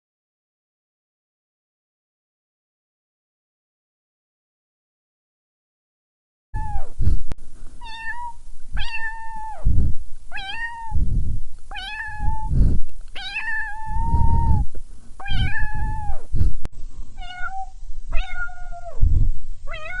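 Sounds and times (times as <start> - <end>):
cat meowing: 6.6 - 7.0, 7.8 - 9.6, 10.3 - 11.0, 11.7 - 12.5, 13.2 - 14.6, 15.2 - 16.2, 17.2 - 19.0, 19.7 - 20.0
low rumbling noise: 6.6 - 20.0.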